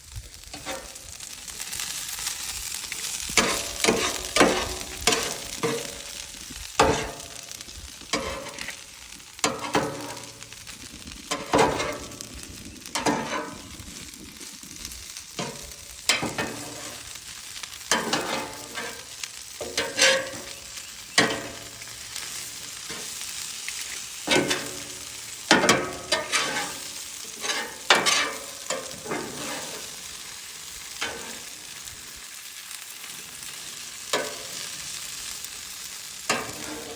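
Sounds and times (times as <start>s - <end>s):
food sizzling on a griddle: 0.0s - 36.9s
metal utensil clinking and scraping: 0.6s - 1.0s, 3.4s - 6.0s, 17.9s - 20.5s, 25.5s - 29.8s.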